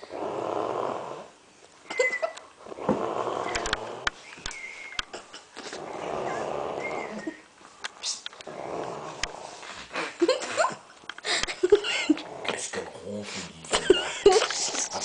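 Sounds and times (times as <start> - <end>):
woman snoring loudly: 0.0 - 1.3, 2.6 - 4.1, 5.8 - 7.4.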